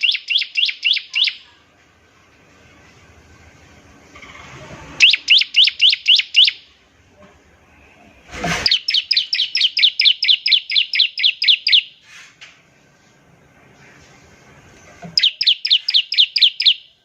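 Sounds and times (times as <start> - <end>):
bird singing rapid notes: 0.0 - 1.4, 5.0 - 6.6, 8.6 - 11.9, 15.2 - 17.0.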